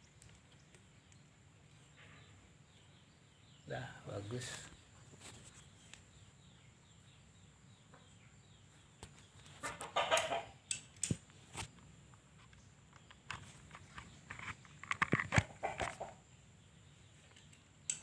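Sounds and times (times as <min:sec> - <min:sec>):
chicken clucking: 0:09.4 - 0:10.6, 0:15.4 - 0:16.3.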